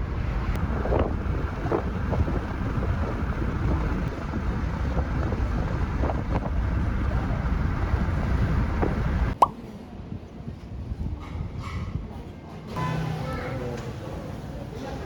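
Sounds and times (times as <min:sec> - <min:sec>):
wind buffeting microphone: 0:00.0 - 0:09.4, 0:10.0 - 0:12.4.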